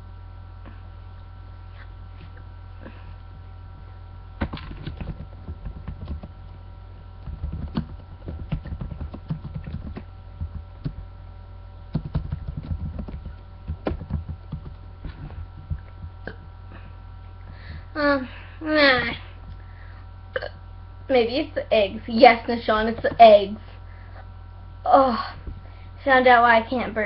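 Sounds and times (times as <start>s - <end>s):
electrical hum: 0.0s - 27.0s
soft low thumps and clicks: 4.4s - 11.1s, 11.9s - 16.6s.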